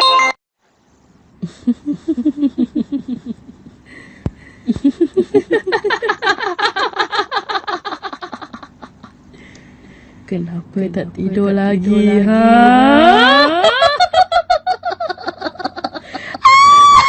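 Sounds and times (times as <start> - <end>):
high voice laughing: 11.9 - 17.0.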